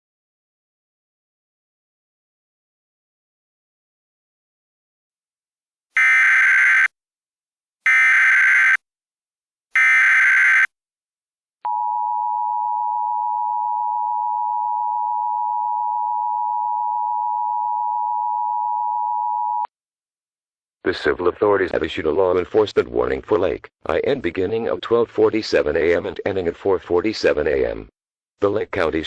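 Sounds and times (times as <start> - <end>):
data tone bursts: 6.0 - 6.9, 7.9 - 8.8, 9.8 - 10.7
steady two-tone alert beep: 6.0 - 6.9, 7.9 - 8.8, 9.8 - 10.7.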